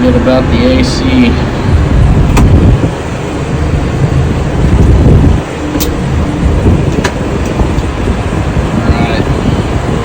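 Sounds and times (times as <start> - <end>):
tractor engine rumble: 0.0 - 10.0.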